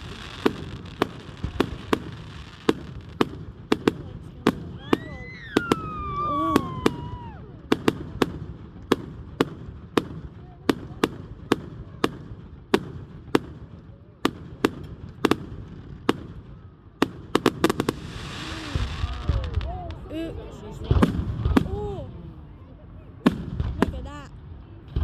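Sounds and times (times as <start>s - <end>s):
quick firework cracks: 0.0s - 9.1s, 17.0s - 20.1s
fireworks bangs: 0.0s - 22.5s, 23.1s - 25.0s.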